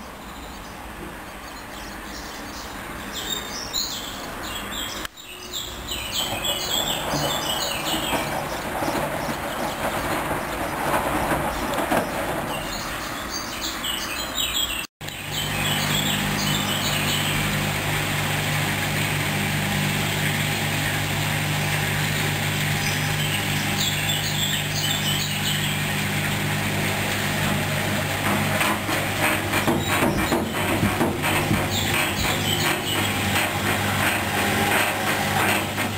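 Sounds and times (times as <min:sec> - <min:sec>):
washing machine motor hum: 0:06.2 - 0:12.5, 0:15.0 - 0:35.9.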